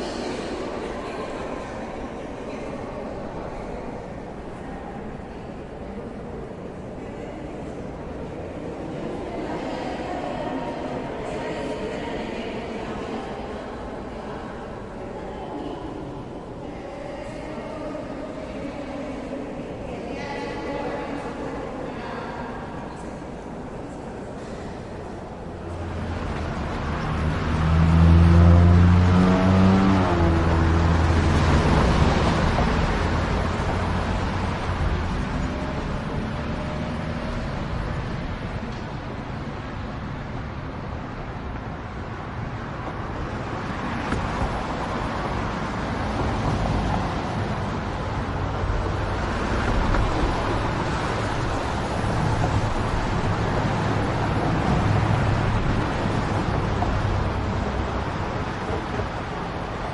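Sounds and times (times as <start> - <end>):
passing cars: 0.0 - 59.9
vehicle engine pulling away: 25.6 - 38.6.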